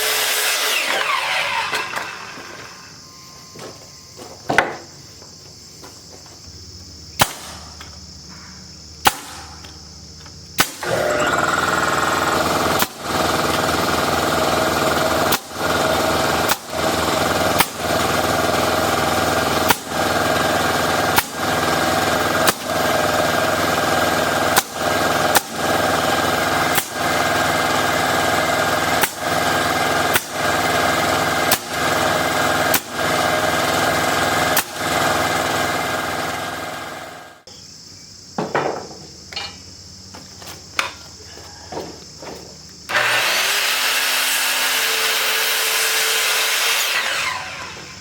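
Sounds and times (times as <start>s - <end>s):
sharp bangs: 7.2s - 7.8s, 9.0s - 9.7s
motor running loudly: 10.6s - 37.4s, 42.9s - 48.0s.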